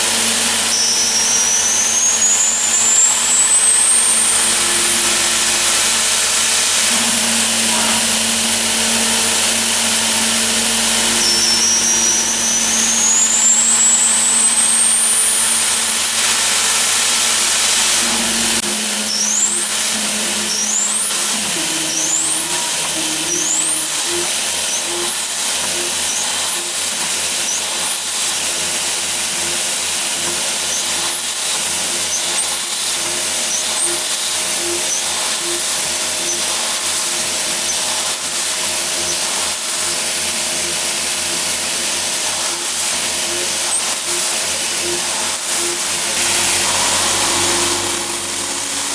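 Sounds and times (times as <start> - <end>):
short rising motor chirps: 0.0 - 26.8, 40.6 - 48.9
machine motors whining: 0.0 - 48.9
mechanical hum: 0.0 - 48.9.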